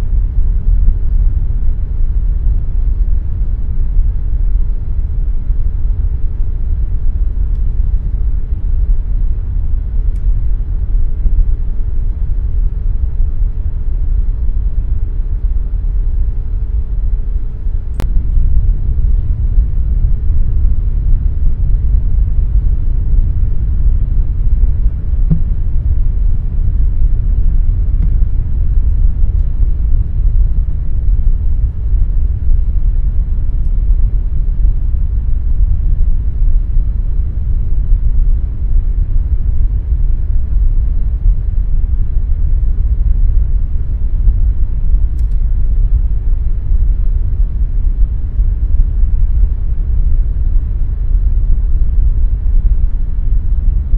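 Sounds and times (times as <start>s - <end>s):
air conditioner rumble: 0.0s - 53.9s
sharp click: 25.3s - 25.6s, 45.2s - 45.4s.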